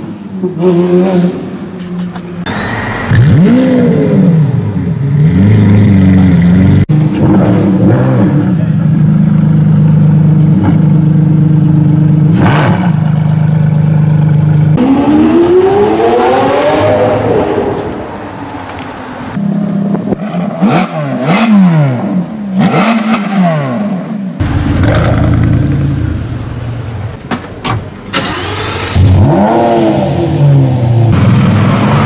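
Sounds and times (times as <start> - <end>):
sports car engine revving: 19.4 - 26.6, 28.2 - 32.0.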